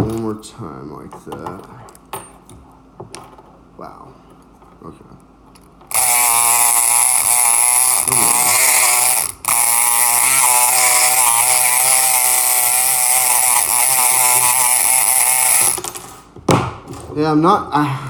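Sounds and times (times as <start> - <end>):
electric lock pick buzzing: 5.6 - 16.3.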